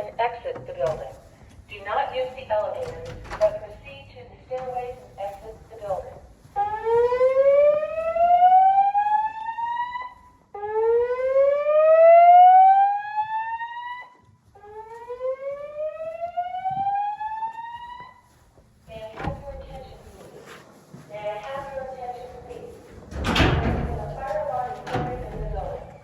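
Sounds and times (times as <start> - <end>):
recorded evacuation message: 0.0 - 7.0, 18.9 - 20.5, 21.1 - 26.0
fire alarm whoop tone: 6.6 - 18.2.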